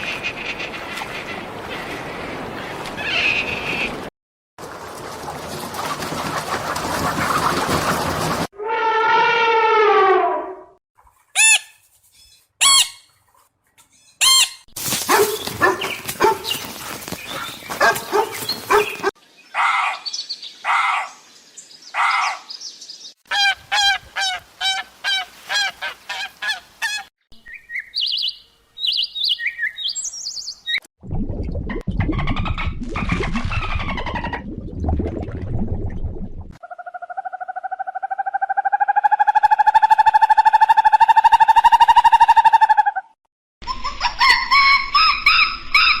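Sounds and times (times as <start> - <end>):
high bird chirps: 27.4 - 30.8
short upswept bird chirps: 27.4 - 30.8.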